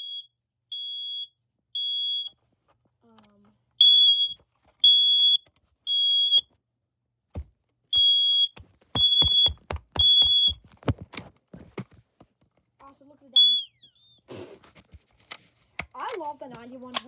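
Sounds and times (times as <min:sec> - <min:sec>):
smoke alarm beeping: 0:00.0 - 0:02.3, 0:03.8 - 0:06.5, 0:07.9 - 0:10.6, 0:13.4 - 0:14.2.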